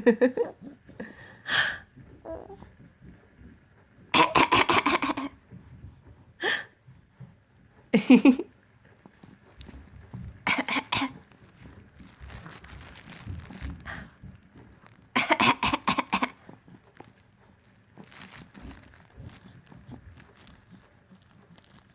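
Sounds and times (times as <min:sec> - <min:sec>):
person coughing: 0:04.2 - 0:05.4, 0:10.5 - 0:11.2, 0:15.2 - 0:16.4.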